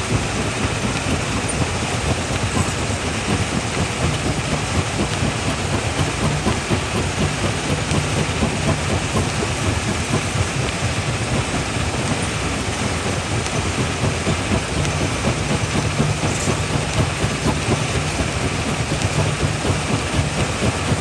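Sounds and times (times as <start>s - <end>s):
rock crusher rumbling: 0.0s - 21.0s.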